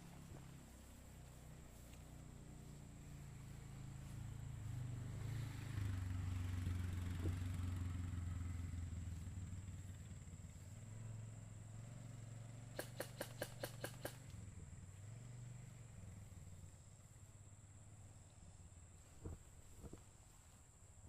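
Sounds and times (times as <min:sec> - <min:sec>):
vehicle engine running: 0:00.0 - 0:21.0
rapid sharp clicks: 0:12.7 - 0:14.4.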